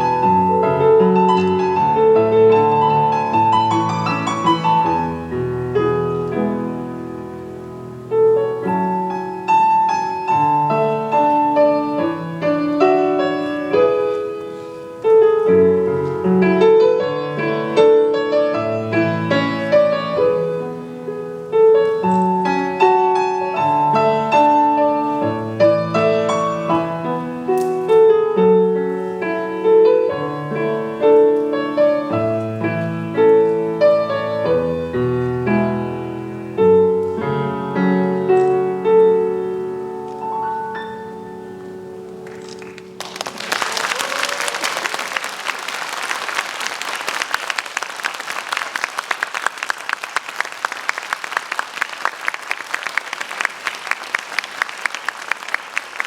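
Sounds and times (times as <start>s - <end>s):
slow gentle piano piece: 0.0s - 44.1s.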